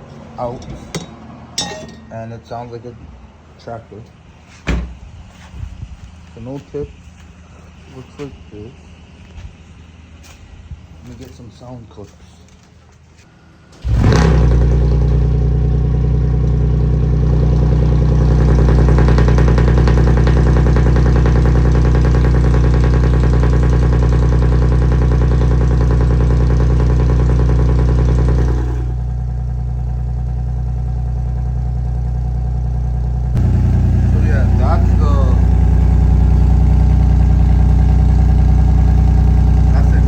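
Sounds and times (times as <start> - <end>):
car engine starting and idling: 13.7 - 40.0.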